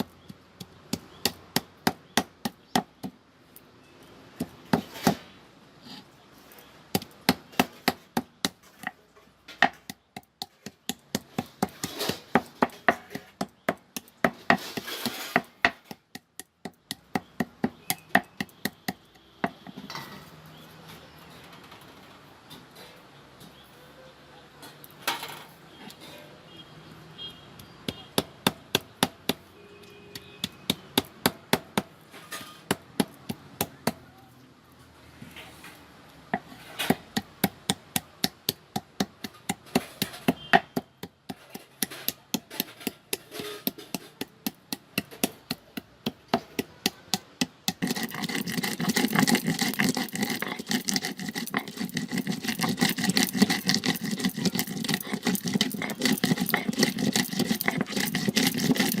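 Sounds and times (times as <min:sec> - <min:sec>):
stone grinding on stone: 0:09.6 - 0:18.5, 0:39.0 - 0:45.4, 0:46.0 - 0:59.0
stone roller knocking on stone slab: 0:45.0 - 0:59.0.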